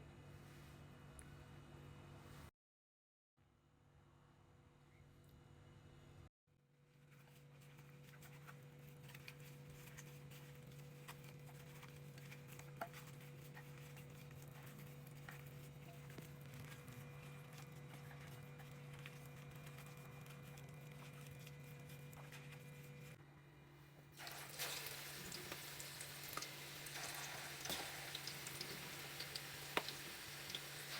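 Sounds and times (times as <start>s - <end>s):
faint steady hum: 23.2s - 30.9s.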